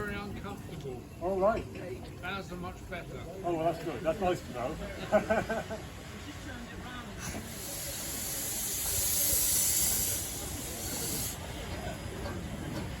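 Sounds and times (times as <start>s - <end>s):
steam locomotive blowing off steam: 7.0s - 13.0s.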